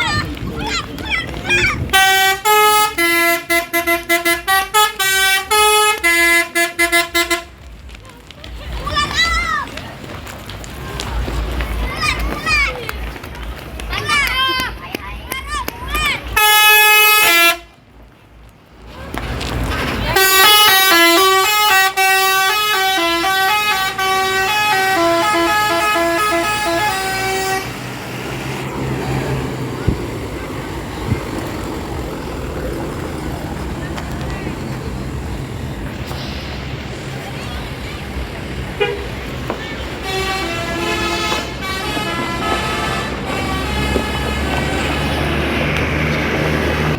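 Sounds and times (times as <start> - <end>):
bus engine running: 0.0 - 46.9
multi-tone musical air horn: 1.9 - 7.6, 16.4 - 17.7, 20.2 - 28.2, 39.7 - 45.6.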